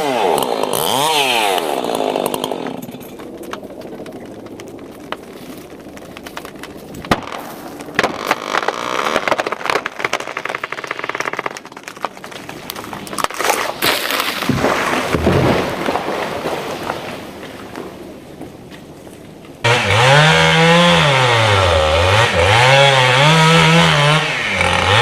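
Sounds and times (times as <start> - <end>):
chainsaw engine running: 0.0 - 4.8, 19.6 - 25.0
wood cracking and snapping: 0.0 - 25.0
tree falling with rumbling crash: 1.8 - 18.8.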